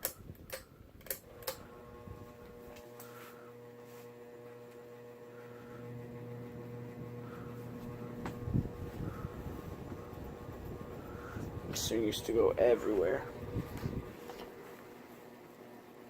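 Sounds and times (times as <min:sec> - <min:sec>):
sharp clicks: 0:00.0 - 0:01.6
light globes buzzing: 0:00.0 - 0:15.8
ceiling fan motor humming: 0:00.0 - 0:16.0.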